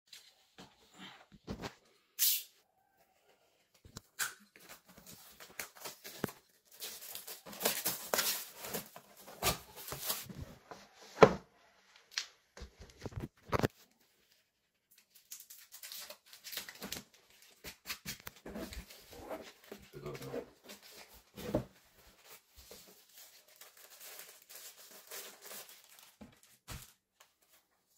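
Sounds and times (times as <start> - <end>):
wrapping tearing and crinkling: 4.6 - 10.3, 14.9 - 19.1, 22.7 - 27.2.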